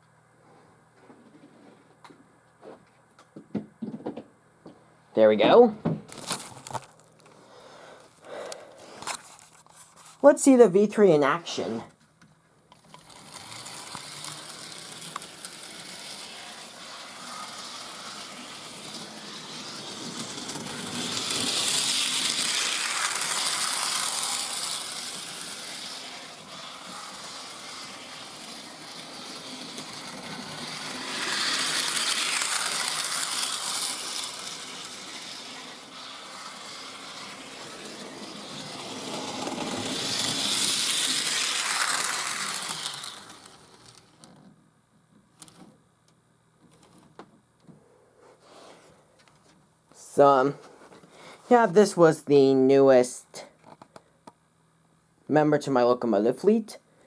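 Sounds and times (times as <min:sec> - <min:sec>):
model train motor whirring: 0:12.7 - 0:44.4.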